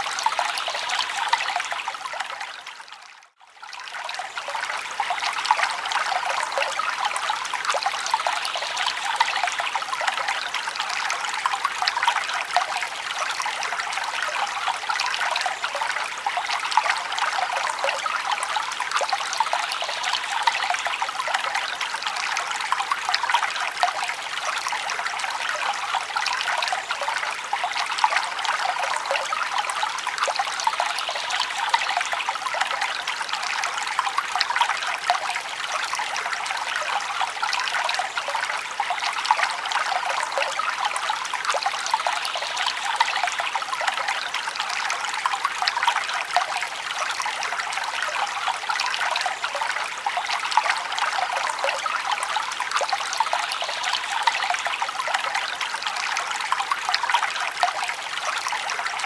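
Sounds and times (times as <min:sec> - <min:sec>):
stream babbling over stones: 0:00.0 - 0:59.0.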